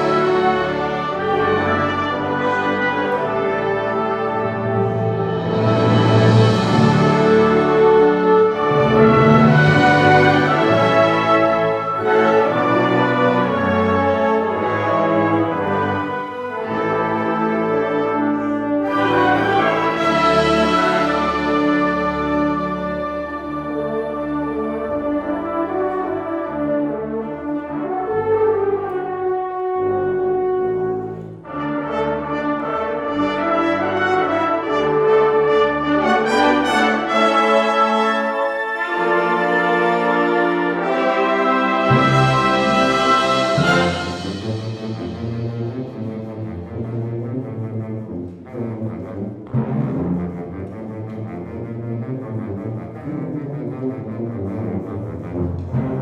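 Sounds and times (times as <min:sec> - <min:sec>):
concert wind band playing: 0:00.0 - 0:56.0
sustained brass chords: 0:00.0 - 0:56.0
concert band playing: 0:41.5 - 0:46.1.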